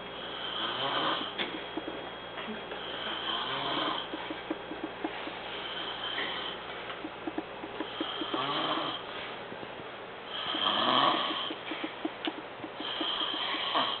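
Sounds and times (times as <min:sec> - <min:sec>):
man snoring: 0:00.2 - 0:01.4, 0:02.8 - 0:04.1, 0:07.8 - 0:09.0, 0:10.3 - 0:11.6, 0:12.8 - 0:14.0.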